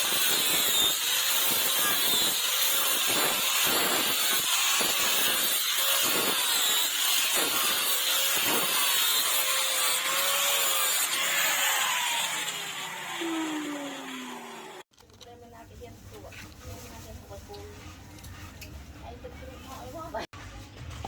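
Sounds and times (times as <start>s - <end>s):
power tool motor running: 0.0s - 14.9s.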